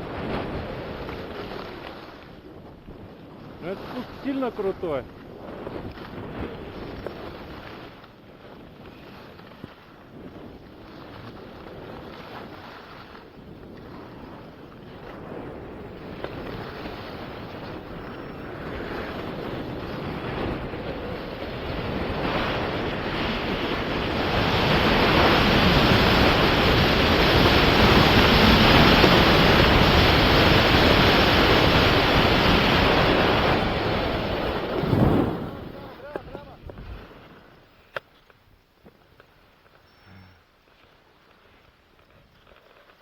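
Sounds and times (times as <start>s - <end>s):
wind on microphone: 0.0s - 37.9s
skis hissing over snow: 39.0s - 43.0s.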